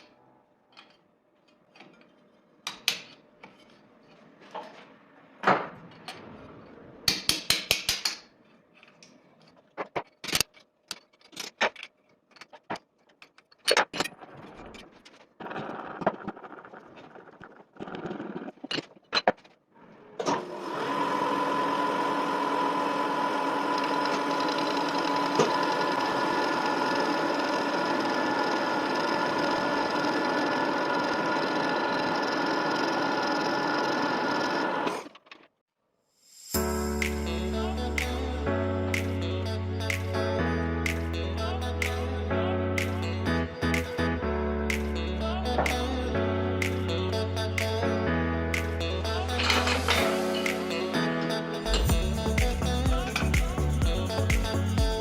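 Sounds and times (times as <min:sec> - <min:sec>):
tools clicking and knocking: 0:00.7 - 0:03.8, 0:07.1 - 0:14.2
lathe humming and whining: 0:20.4 - 0:35.0.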